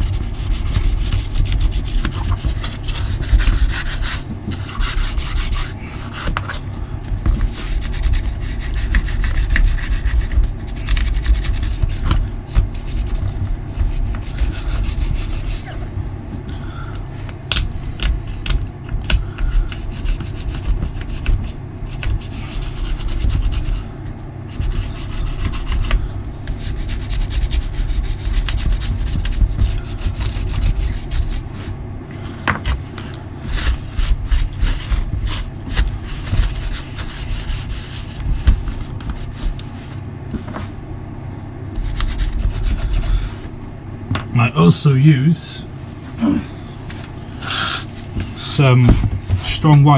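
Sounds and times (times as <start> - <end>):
toothbrush scrubbing: 0.0 - 6.4, 7.4 - 15.8, 19.4 - 23.9, 24.5 - 31.7, 33.5 - 39.7, 41.7 - 43.3.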